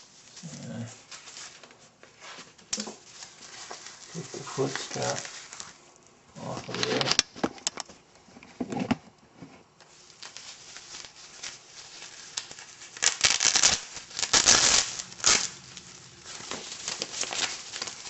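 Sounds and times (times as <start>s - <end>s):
velcro strap ripping: 10.3s - 18.0s.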